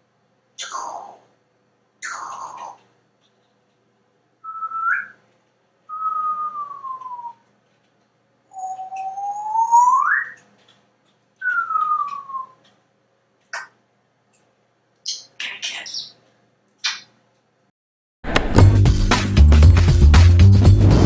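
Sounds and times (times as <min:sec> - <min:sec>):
parrot whistling glides: 0:05.9 - 0:07.4
brief click: 0:18.3 - 0:18.7.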